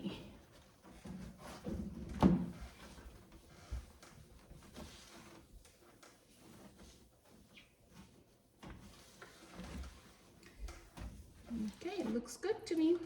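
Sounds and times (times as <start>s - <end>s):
cloth wiping a surface: 2.5s - 12.2s.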